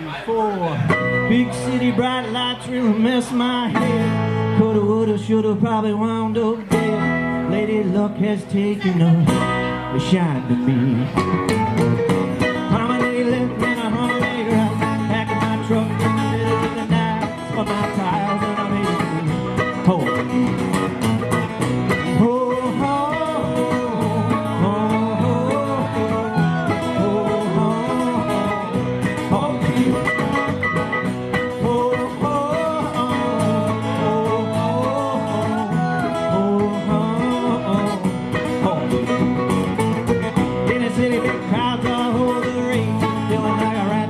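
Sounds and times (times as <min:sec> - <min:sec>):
live country band playing: 0:00.0 - 0:44.0.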